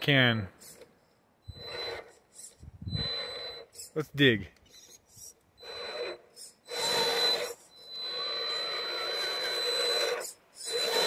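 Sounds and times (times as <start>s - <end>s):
electric motor whining: 1.4s - 4.0s, 4.7s - 11.0s.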